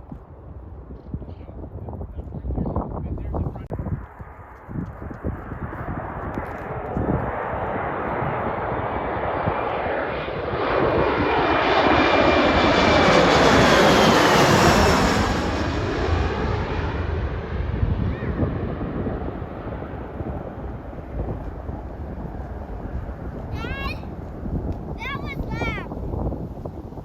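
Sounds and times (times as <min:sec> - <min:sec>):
jet airliner engine roar: 0:03.3 - 0:27.0
high jet whine: 0:06.4 - 0:27.0.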